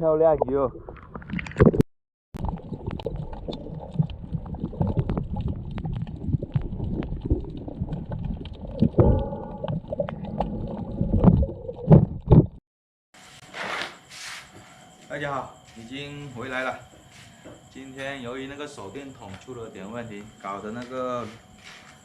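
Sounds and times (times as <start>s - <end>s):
muffled water sloshing: 2.4s - 12.6s
louder thumps: 8.8s - 12.6s.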